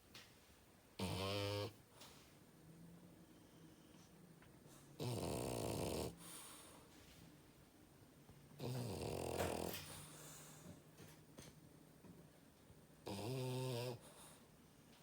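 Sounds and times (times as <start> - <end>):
dog snoring: 1.0 - 1.8, 4.7 - 6.8, 8.6 - 10.8, 13.0 - 14.4.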